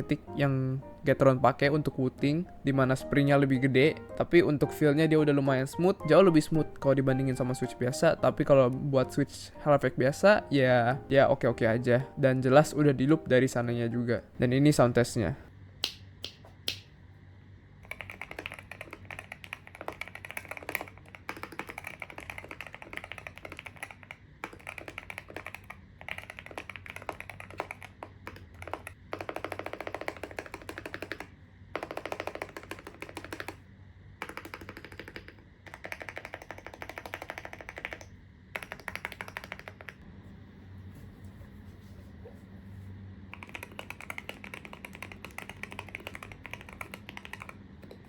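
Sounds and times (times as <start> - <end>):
mechanical keyboard typing: 17.8 - 33.6, 34.2 - 40.0, 43.3 - 48.0.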